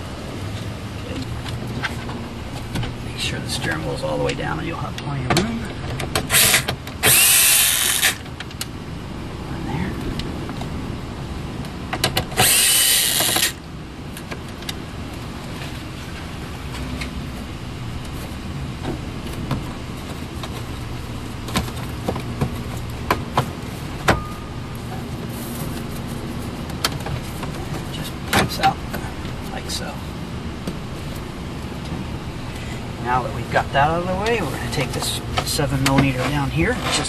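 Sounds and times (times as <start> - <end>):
power driver running: 6.2 - 8.2, 12.2 - 13.6.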